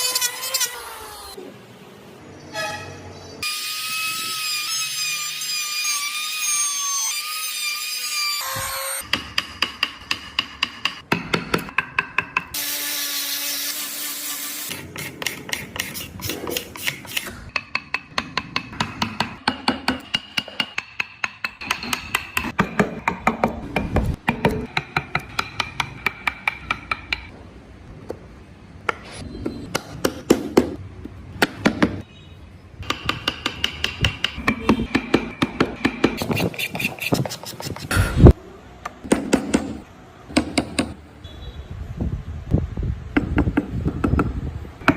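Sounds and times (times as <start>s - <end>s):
hammer tapping on chisel: 9.1s - 12.6s, 16.5s - 27.3s, 32.8s - 36.2s.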